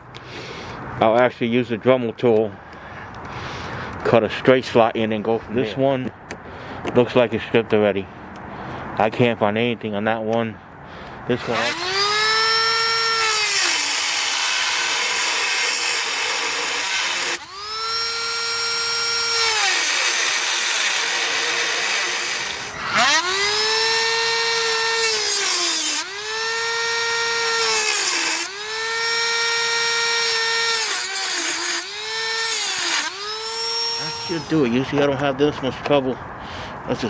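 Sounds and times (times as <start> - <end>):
harsh rasping of stripped screw: 11.4 - 34.7
power drill motor whine: 11.4 - 34.7.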